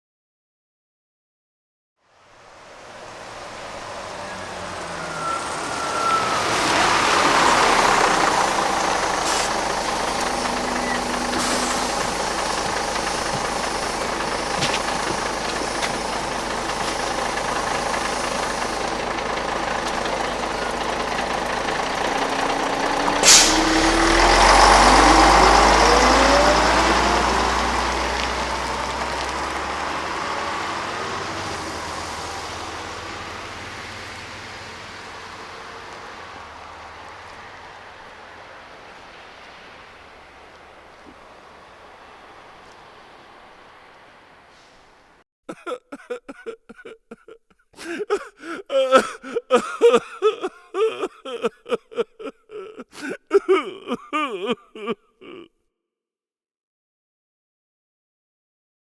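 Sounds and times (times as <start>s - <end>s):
bus engine and drivetrain whine: 2.1s - 45.2s, 47.8s - 52.3s
bus diesel engine idling: 2.3s - 45.2s, 47.8s - 52.3s
bus brake squeal: 3.2s - 19.1s, 23.0s - 27.4s
air brake hiss: 8.2s - 18.7s, 23.2s - 23.9s, 44.5s - 45.1s.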